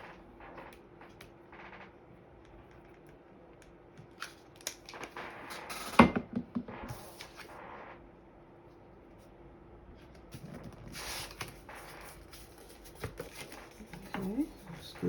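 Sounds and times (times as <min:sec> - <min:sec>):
paper rustling: 0:10.4 - 0:14.6.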